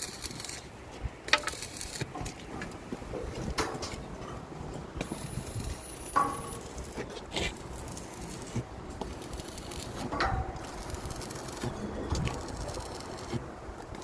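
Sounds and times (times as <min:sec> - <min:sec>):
steady background noise: 0:00.0 - 0:14.0
building work knocks and clanks: 0:01.3 - 0:05.2, 0:06.0 - 0:07.3, 0:10.0 - 0:10.8.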